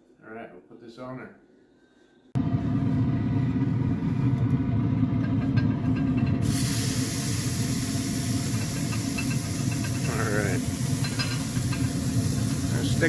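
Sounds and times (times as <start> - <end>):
smoker low rumble: 2.4 - 13.0
high hiss: 6.4 - 13.0.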